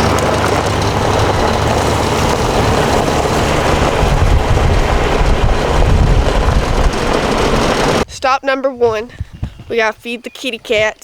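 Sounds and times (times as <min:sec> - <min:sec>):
utility vehicle engine running: 0:00.0 - 0:08.0
ride noise over ground: 0:00.0 - 0:08.1.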